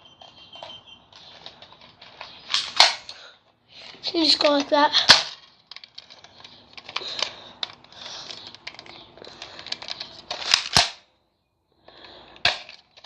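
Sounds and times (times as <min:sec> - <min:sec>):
plastic gear rustling: 0:01.1 - 0:02.9, 0:03.7 - 0:10.8
sharp plastic clicks: 0:04.2 - 0:11.1.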